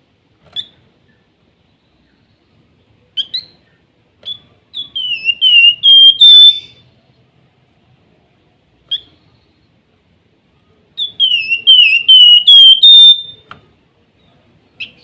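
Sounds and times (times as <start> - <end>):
bird chirps: 0.5 - 7.2, 8.9 - 9.8, 11.0 - 13.5, 14.1 - 15.0
bird whistling high notes: 5.0 - 6.8, 11.1 - 13.4.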